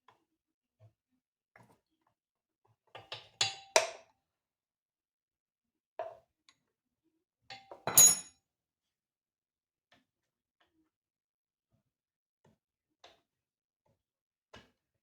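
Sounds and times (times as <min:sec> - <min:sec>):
metal tools clinking on metal: 0:07.9 - 0:08.3.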